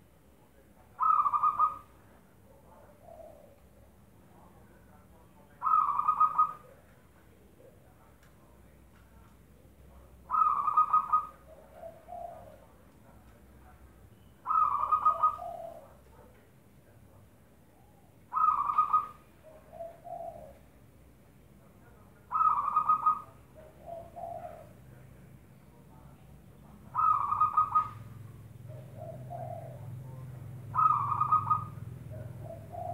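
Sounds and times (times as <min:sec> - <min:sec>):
dove cooing: 0:01.0 - 0:01.9, 0:02.7 - 0:03.7, 0:05.6 - 0:06.8, 0:10.3 - 0:12.7, 0:14.4 - 0:16.3, 0:17.8 - 0:20.7, 0:22.3 - 0:24.8, 0:26.9 - 0:32.9.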